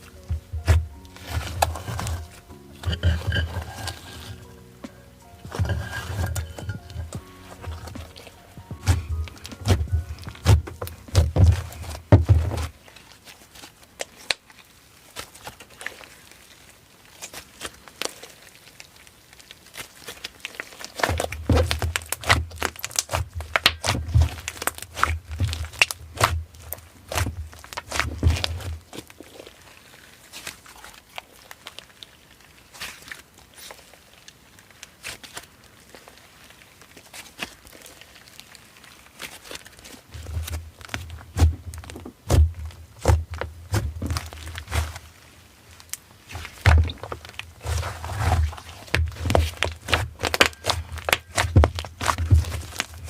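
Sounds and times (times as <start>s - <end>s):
soft low thumps of handling: 0.0s - 12.7s
slime squished by hand: 0.0s - 53.0s.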